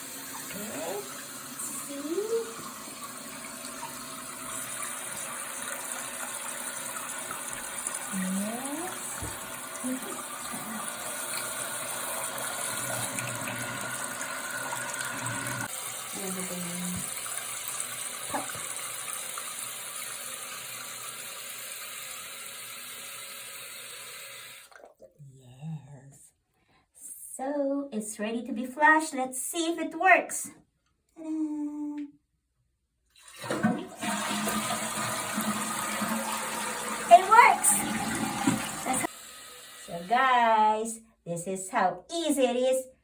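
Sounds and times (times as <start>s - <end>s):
toilet tank refilling hiss: 0.0s - 24.8s, 33.2s - 40.1s.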